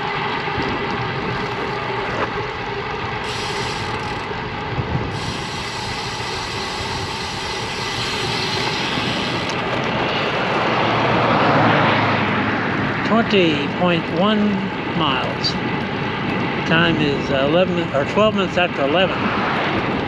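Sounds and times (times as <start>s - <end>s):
tyre road noise: 0.0s - 20.0s
wind rush: 0.4s - 20.0s.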